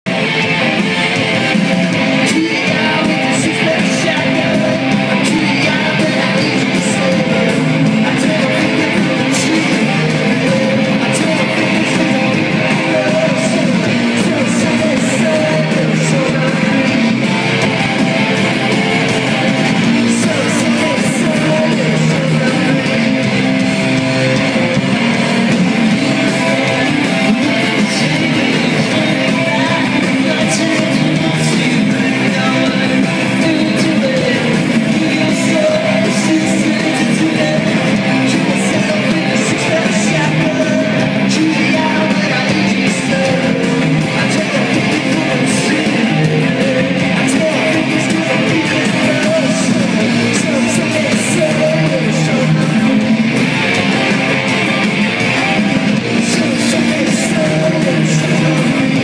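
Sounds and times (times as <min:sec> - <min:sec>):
live rock band playing: 0:00.0 - 0:59.0
strummed guitar: 0:00.1 - 0:59.0.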